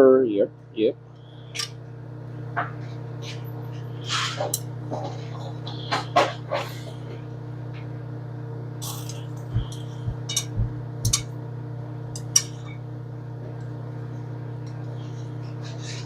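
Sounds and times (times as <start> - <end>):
low electrical hum: 0.0 - 16.0
kitchen utensils and dishes clicking: 8.8 - 11.3, 12.2 - 12.6.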